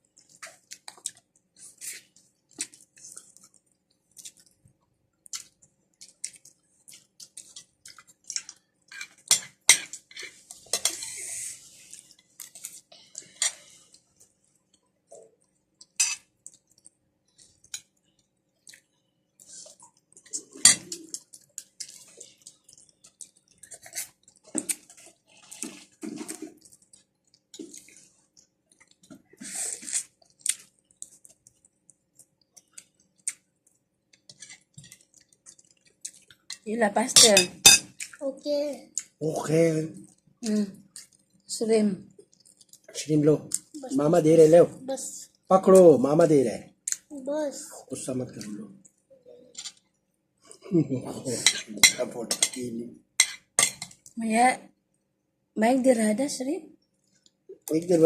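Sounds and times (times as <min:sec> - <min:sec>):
chewing: 0:00.0 - 0:11.0, 0:11.7 - 0:36.7, 0:40.0 - 0:41.5, 0:42.1 - 0:43.7
cutlery clinking on plates: 0:51.4 - 0:52.6, 0:53.2 - 0:54.0.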